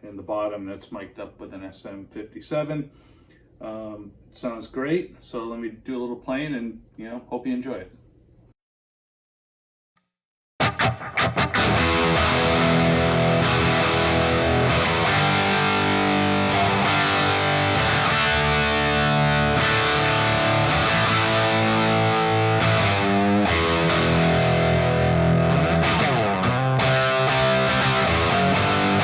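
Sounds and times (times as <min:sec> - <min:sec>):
overdriven electric guitar: 0:10.6 - 0:29.0.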